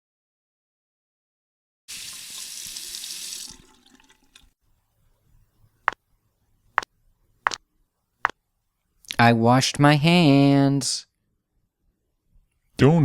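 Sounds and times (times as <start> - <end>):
water running from a tap: 1.9 - 4.5.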